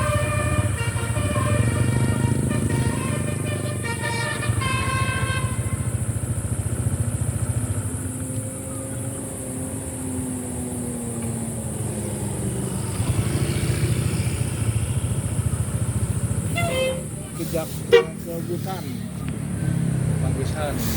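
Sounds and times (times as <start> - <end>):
multi-tone horn melody: 0.0 - 6.0, 16.5 - 18.4
bus engine running: 0.0 - 20.9
road rumble: 0.0 - 20.9.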